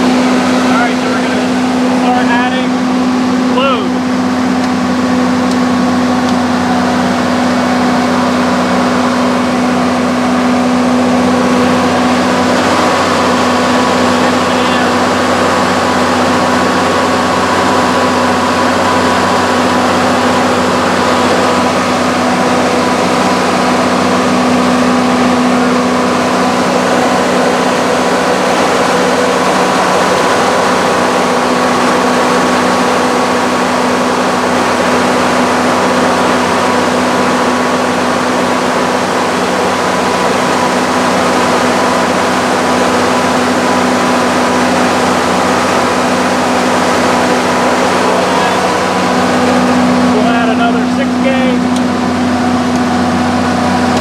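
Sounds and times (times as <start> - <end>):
diesel generator running: 0.0 - 54.0.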